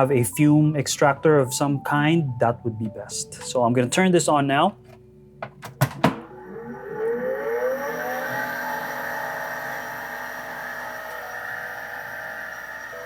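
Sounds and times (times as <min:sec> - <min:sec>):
electric fan motor whine: 0:05.5 - 0:13.0.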